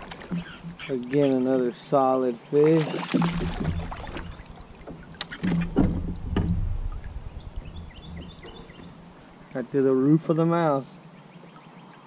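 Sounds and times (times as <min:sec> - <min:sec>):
knocks and clicks against hull: 0:00.0 - 0:01.2, 0:03.0 - 0:09.0
low rumble: 0:05.8 - 0:09.2.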